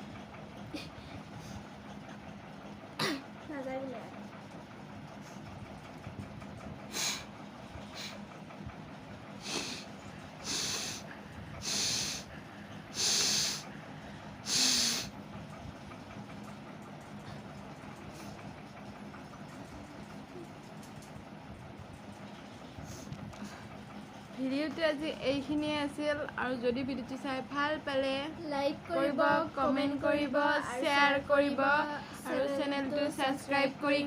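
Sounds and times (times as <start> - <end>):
person blowing nose: 9.4 - 9.8, 10.4 - 11.0, 11.6 - 12.2, 13.0 - 13.6, 14.5 - 15.1.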